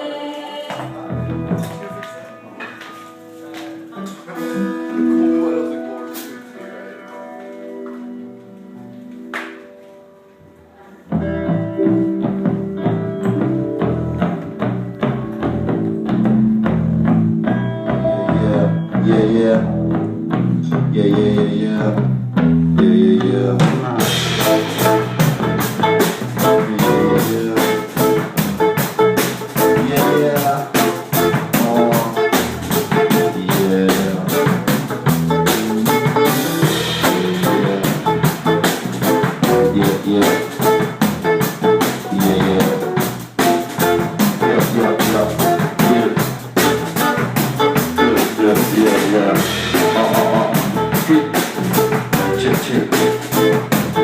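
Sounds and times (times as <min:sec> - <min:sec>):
guitar and bass notes: 0:00.0 - 0:54.0
drum kit fast beat: 0:22.4 - 0:54.0.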